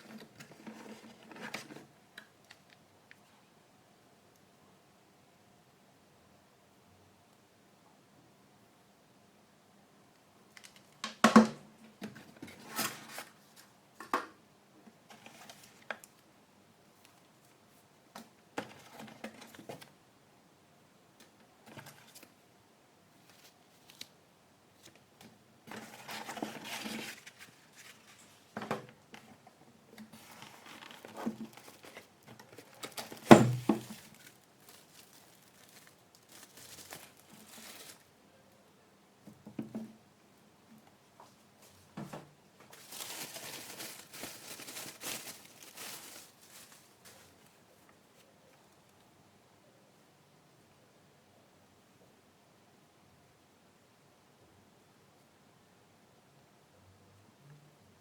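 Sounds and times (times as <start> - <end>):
wrapping crinkling and rustling: 0.0 - 1.9, 11.9 - 13.8, 15.1 - 16.2, 23.2 - 24.2, 24.8 - 38.2, 42.6 - 49.0.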